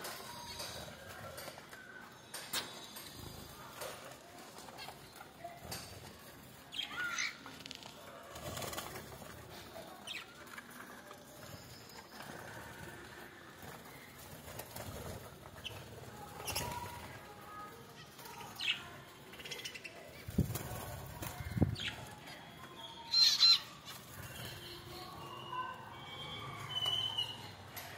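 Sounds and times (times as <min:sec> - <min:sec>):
birds fluttering wings: 0:07.4 - 0:17.4, 0:20.1 - 0:22.2
bird chirps: 0:22.6 - 0:27.7.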